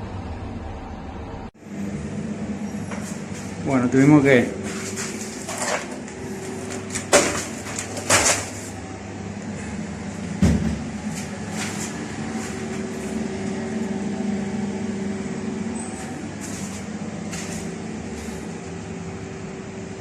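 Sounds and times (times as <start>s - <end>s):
hot-air blower humming: 1.4s - 20.0s.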